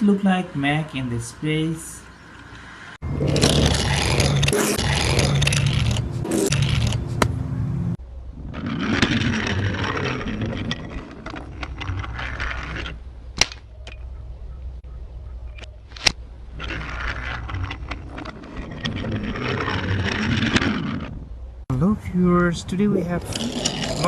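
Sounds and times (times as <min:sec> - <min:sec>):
toy vehicle rattling on track: 0:08.5 - 0:13.0, 0:16.6 - 0:21.1, 0:23.1 - 0:24.0.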